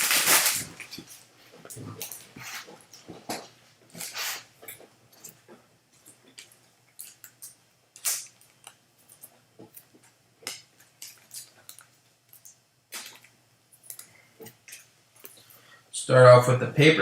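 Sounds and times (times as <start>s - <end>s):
foil card pack crinkling: 0.0s - 1.2s.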